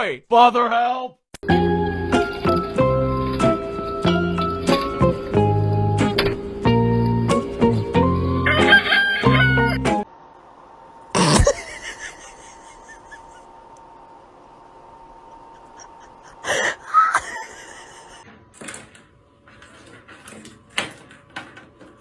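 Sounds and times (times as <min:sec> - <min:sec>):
background music: 0:01.4 - 0:10.1
rooster crowing: 0:08.3 - 0:10.0
faint steady hum: 0:10.0 - 0:21.9.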